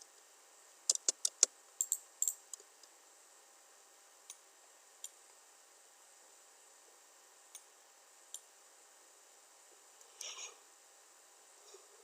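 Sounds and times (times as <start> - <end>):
keyboard and mouse clicking: 0.9 - 2.4.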